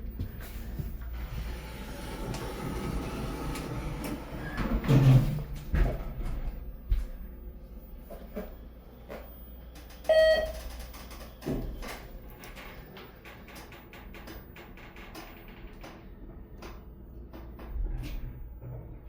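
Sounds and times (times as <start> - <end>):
elevator car humming: 0.0 - 19.0
elevator chime: 8.6 - 12.8.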